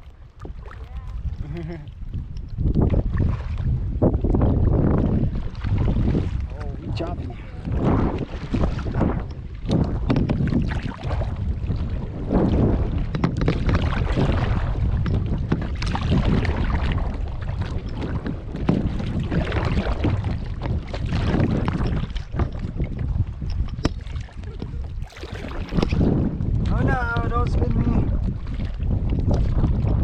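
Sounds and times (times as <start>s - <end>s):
lake water splashing and lapping: 0.0s - 30.0s
wind buffeting microphone: 0.0s - 30.0s.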